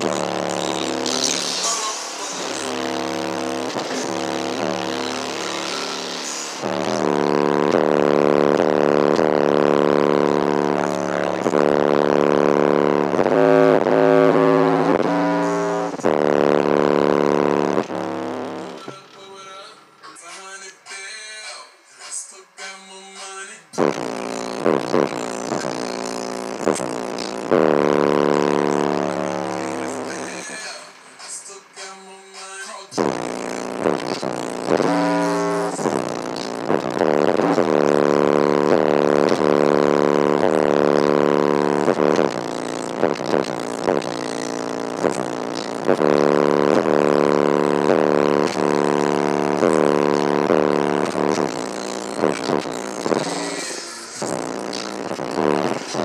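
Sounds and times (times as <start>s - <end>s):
engine-like revving through subwoofer: 0.0s - 18.8s, 23.8s - 31.1s, 33.0s - 56.0s
low buzzing tone: 2.5s - 18.8s, 24.0s - 30.1s, 33.0s - 53.4s.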